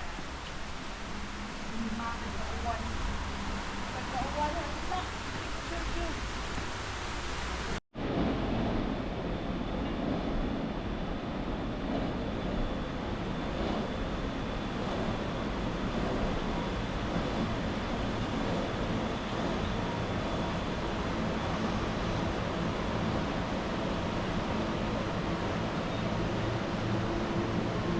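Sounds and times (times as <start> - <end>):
flowing water rushing: 0.0 - 7.8
wind rumble on microphone: 0.0 - 27.9.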